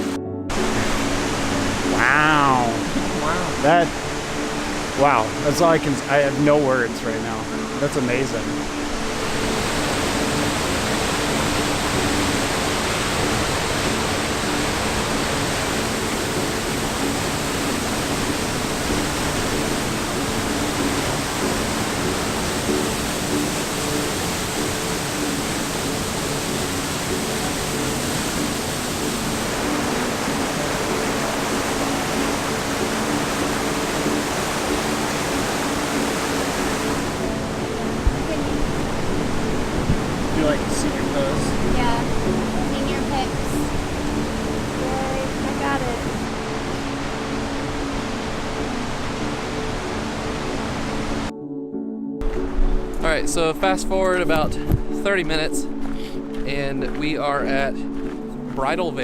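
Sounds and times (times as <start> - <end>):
waterfall roaring: 0.0 - 51.3.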